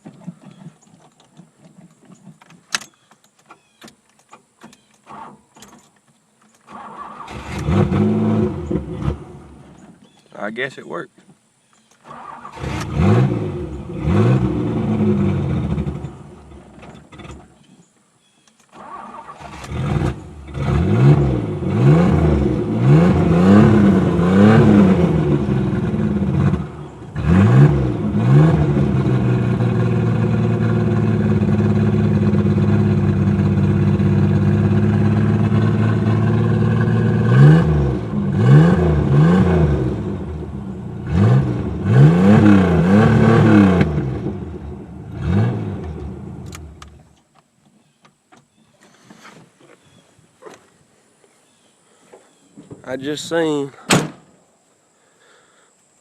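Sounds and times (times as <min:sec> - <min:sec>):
engine starting and revving: 0:04.4 - 0:05.9, 0:06.6 - 0:10.2, 0:12.0 - 0:17.8, 0:18.6 - 0:47.2.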